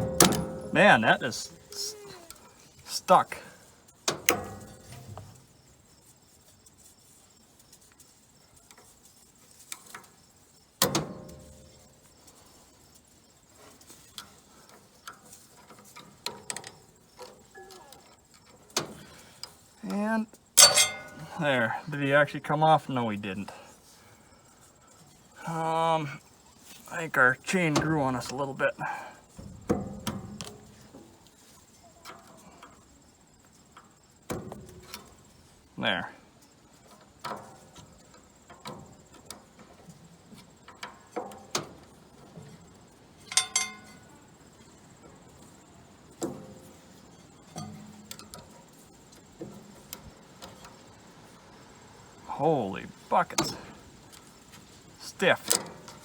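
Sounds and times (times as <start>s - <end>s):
hammer striking metal: 0.0s - 1.7s, 20.6s - 21.3s
metallic chain clicks and knocks: 0.0s - 1.9s, 20.6s - 21.4s, 43.2s - 44.1s
light metal clinks: 0.0s - 19.8s, 20.4s - 21.8s, 40.6s - 50.9s.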